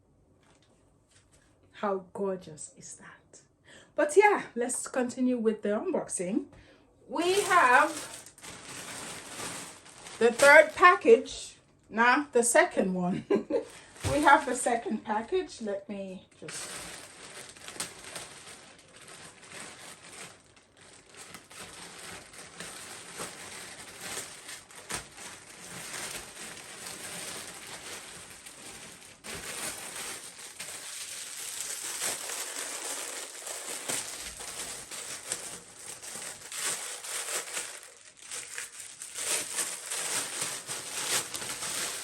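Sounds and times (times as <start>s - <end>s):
packaging crinkling and rustling: 7.1s - 11.4s, 13.5s - 14.9s, 16.4s - 42.0s
sharp crackles: 7.2s - 11.0s.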